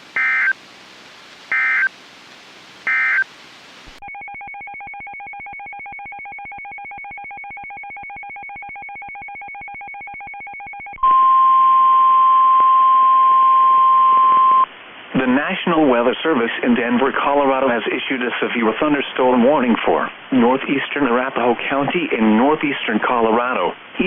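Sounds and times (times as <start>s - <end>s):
single-pitch alarm tone: 0.2s - 0.5s, 1.5s - 1.9s, 2.9s - 3.2s.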